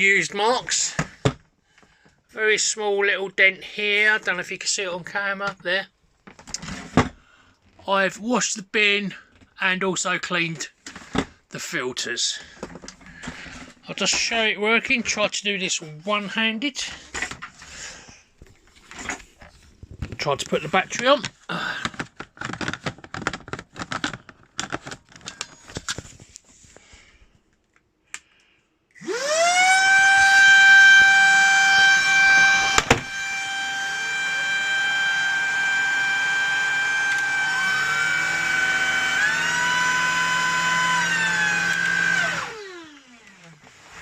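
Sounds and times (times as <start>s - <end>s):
vacuum motor high whine: 29.0s - 43.6s.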